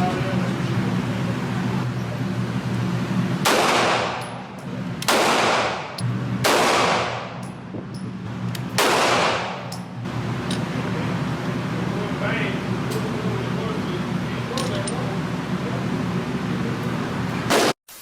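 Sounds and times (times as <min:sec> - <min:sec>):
steady low hum: 0:00.0 - 0:17.6
pistol shots with echo: 0:03.4 - 0:04.4, 0:05.0 - 0:07.4, 0:08.8 - 0:09.8.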